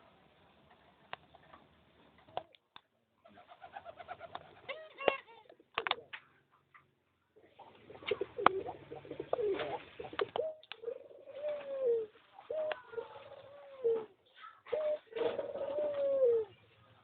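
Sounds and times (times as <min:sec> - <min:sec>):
doves cooing: 0:03.2 - 0:06.2, 0:07.4 - 0:17.0.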